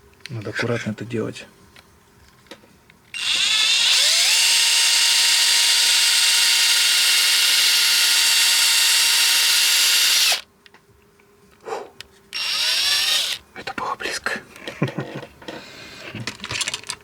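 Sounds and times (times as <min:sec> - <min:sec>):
electric drill whining: 0:03.2 - 0:10.4, 0:12.4 - 0:13.4.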